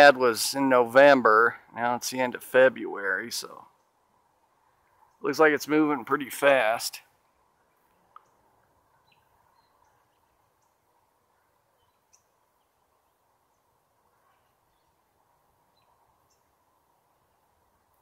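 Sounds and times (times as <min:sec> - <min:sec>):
faint bird chirps: 0:07.2 - 0:18.0.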